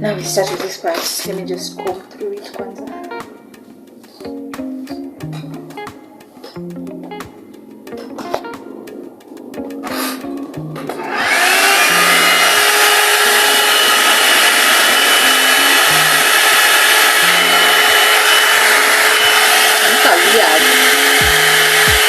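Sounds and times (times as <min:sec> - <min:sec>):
hair dryer motor whine: 0:11.0 - 0:22.0.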